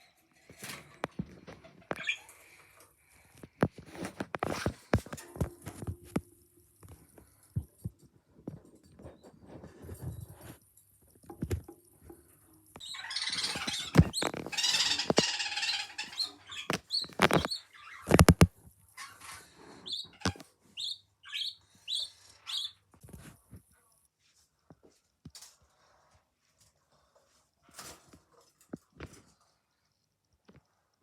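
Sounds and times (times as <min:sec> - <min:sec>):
budgerigar chicks cheeping: 0:12.8 - 0:18.3, 0:19.0 - 0:22.8.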